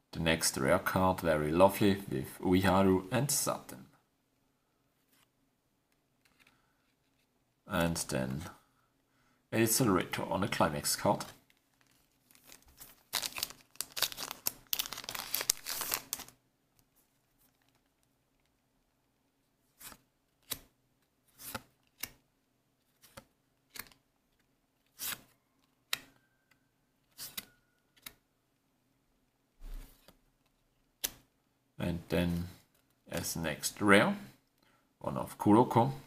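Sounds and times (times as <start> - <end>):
foil pack crinkling and tearing: 11.7 - 16.4.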